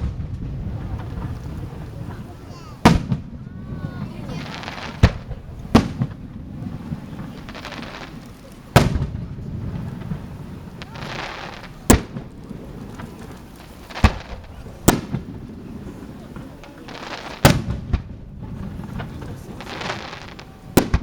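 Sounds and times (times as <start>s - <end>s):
steady low rumble: 0.0s - 11.0s
firework shells bursting: 0.0s - 21.0s.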